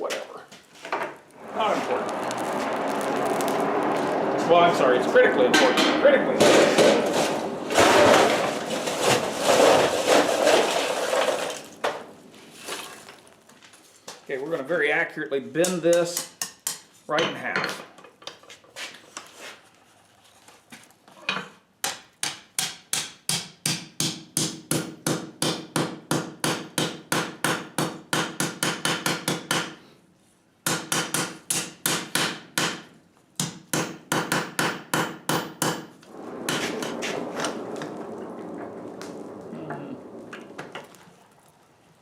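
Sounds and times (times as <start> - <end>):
rushing noise: 1.2 - 12.8, 36.0 - 41.8.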